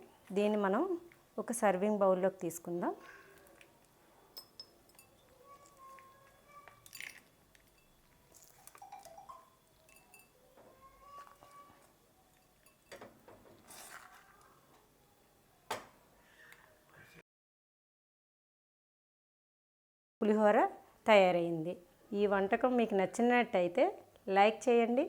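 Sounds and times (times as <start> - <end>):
spoon clinking against bowl: 4.3 - 10.4, 12.3 - 13.1.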